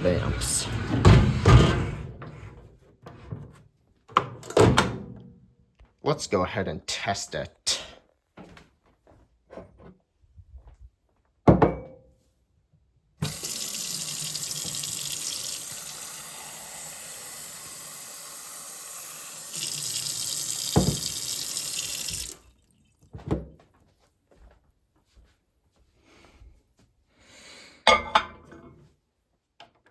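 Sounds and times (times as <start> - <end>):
tap water running into container: 13.2 - 23.2.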